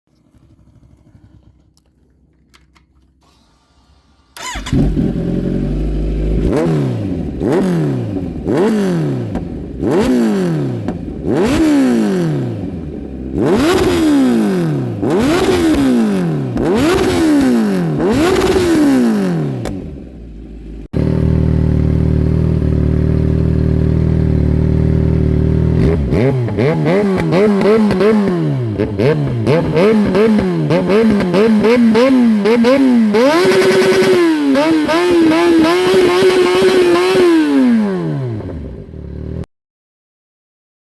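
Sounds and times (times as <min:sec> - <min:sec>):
motorcycle engine revving: 0:00.2 - 0:01.8, 0:04.3 - 0:39.5.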